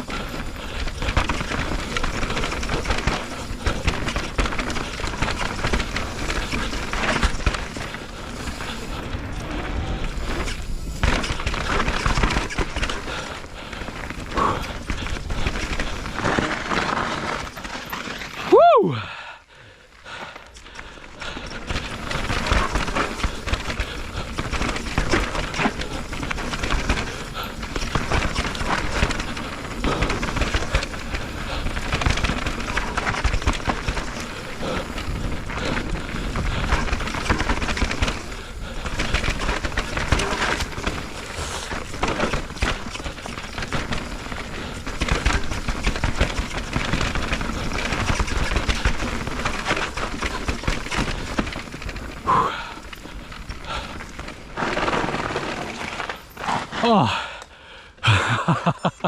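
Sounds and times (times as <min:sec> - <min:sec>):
bike rattling over rough trail: 0:00.0 - 0:59.0.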